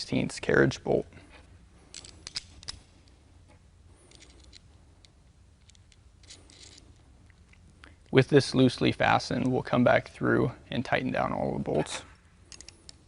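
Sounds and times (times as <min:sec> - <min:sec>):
metal clicks of bolt and nut: 0:01.9 - 0:03.2, 0:04.1 - 0:07.6, 0:12.5 - 0:13.0.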